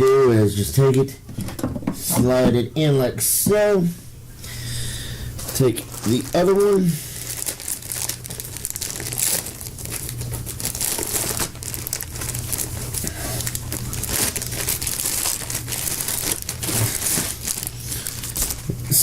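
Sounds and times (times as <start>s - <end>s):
steady low hum: 0.0s - 19.0s
filter crinkling and rustling: 5.2s - 19.0s.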